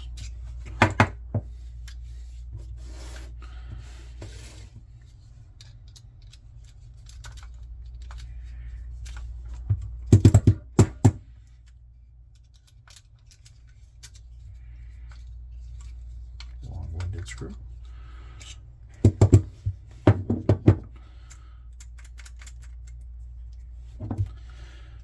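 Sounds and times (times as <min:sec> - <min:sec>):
steady low hum: 0:00.0 - 0:25.0
allen wrench scraping and clicking: 0:05.0 - 0:20.0, 0:21.2 - 0:24.4.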